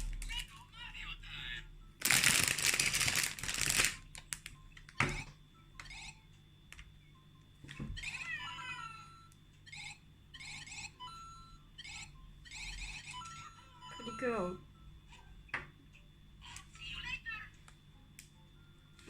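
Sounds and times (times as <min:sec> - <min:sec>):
toy figure electronic chime tones: 0:08.0 - 0:14.6.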